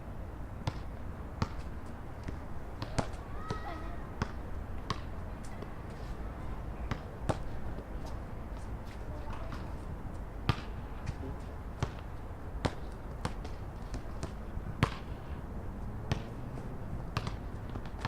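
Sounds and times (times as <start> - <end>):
low traffic rumble: 0.0 - 18.0
basketball bouncing: 0.6 - 1.6, 4.2 - 5.0, 10.5 - 10.7, 12.6 - 15.0, 16.1 - 16.3, 17.2 - 18.0.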